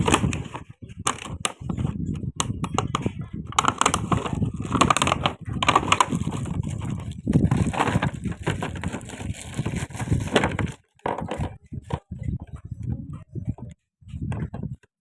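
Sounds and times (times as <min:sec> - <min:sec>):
packaging crinkling and rustling: 0:03.6 - 0:11.5.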